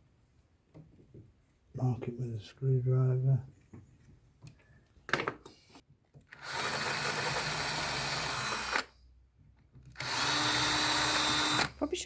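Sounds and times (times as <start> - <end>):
power drill drilling into wood: 6.4 - 8.9, 10.0 - 11.8.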